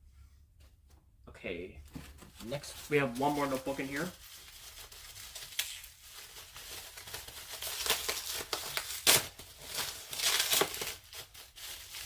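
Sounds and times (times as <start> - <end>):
loud packaging crackle: 2.5 - 12.0
packaging crinkling and tearing: 2.5 - 12.0.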